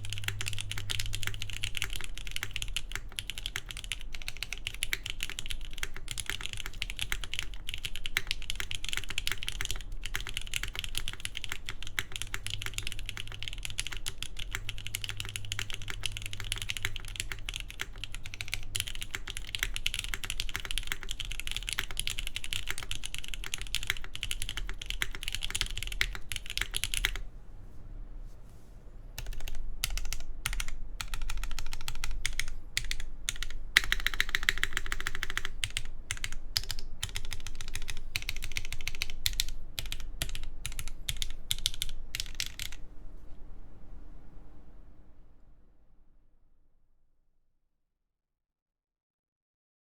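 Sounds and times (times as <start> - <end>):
fast typing on mechanical keyboard: 0.0 - 27.2, 29.2 - 42.8.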